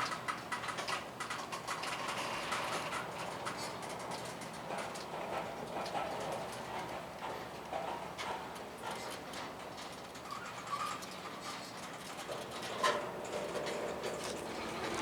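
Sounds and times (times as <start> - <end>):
train wheels clicking over rail joints: 0.0 - 15.0.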